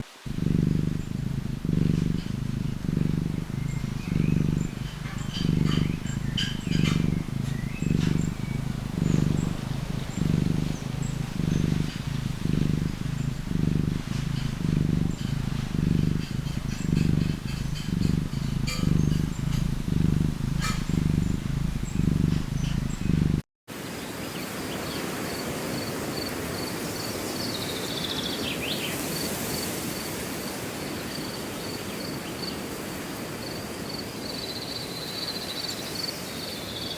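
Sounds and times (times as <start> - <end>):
high insect chirping: 0.0 - 23.2
cat purring: 0.0 - 23.5.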